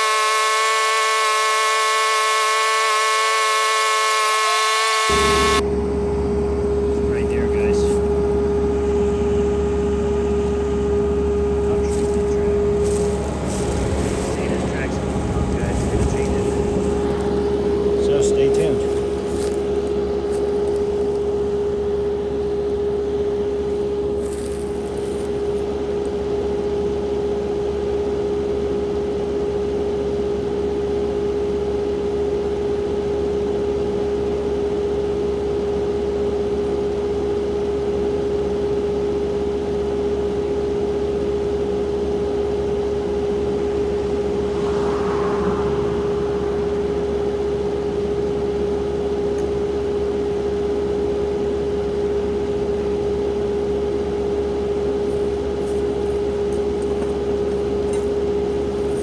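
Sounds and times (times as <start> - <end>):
skid steer engine droning: 0.0 - 35.6.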